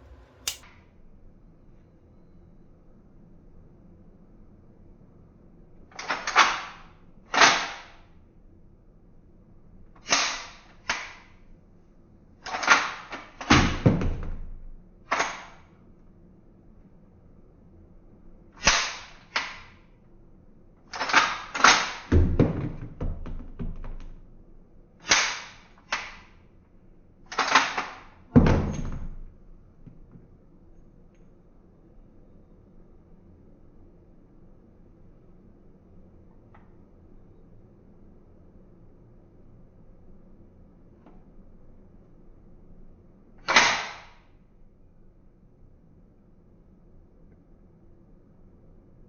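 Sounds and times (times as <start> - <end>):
toy pistol shots: 0.0 - 0.6, 10.0 - 11.2, 18.6 - 19.6, 25.1 - 26.2, 43.5 - 44.1.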